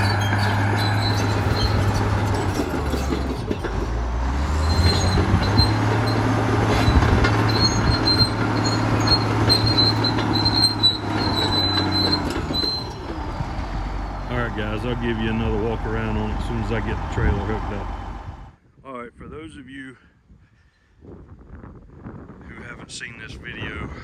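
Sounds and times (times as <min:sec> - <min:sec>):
thin high squeal: 0:00.0 - 0:03.2, 0:04.6 - 0:13.1
diesel engine humming: 0:00.0 - 0:18.6.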